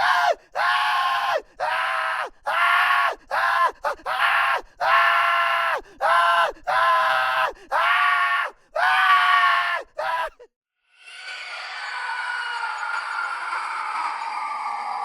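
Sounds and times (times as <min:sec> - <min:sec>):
high-pitched human screams: 0:00.0 - 0:10.5.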